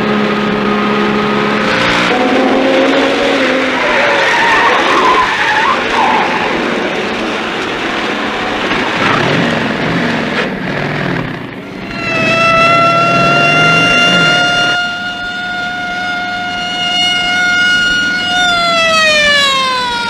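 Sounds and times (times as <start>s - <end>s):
car engine revving hard: 0.0s - 5.0s, 6.3s - 14.8s
siren wailing: 1.4s - 7.1s, 11.7s - 20.0s.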